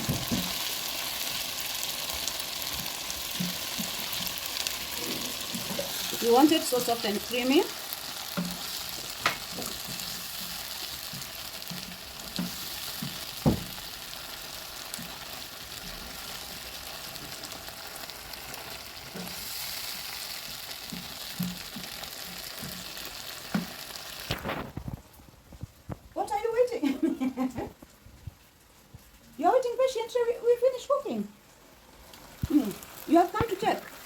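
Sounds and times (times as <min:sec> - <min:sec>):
food sizzling in a pan: 0:00.0 - 0:25.0, 0:30.8 - 0:34.0
spoon knocking against pan: 0:20.9 - 0:22.9.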